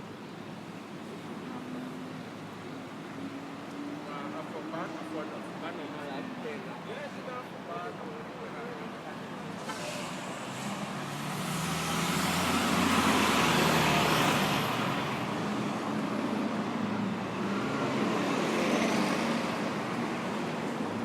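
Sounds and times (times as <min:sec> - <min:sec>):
city street traffic: 0:00.0 - 0:21.0
vehicle passing close by: 0:09.8 - 0:15.8.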